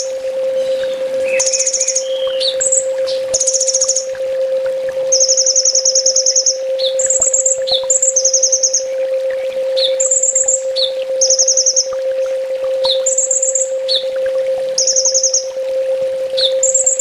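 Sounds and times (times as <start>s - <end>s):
bird trilling song: 0.0s - 4.2s, 5.1s - 11.9s, 12.8s - 14.1s, 14.8s - 15.5s, 16.4s - 17.0s
low hum: 0.0s - 17.0s.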